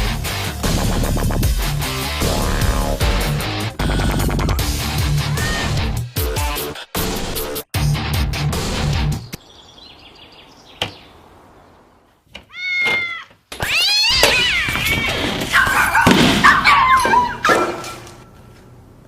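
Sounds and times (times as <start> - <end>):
cat meowing and yowling: 12.5 - 16.0.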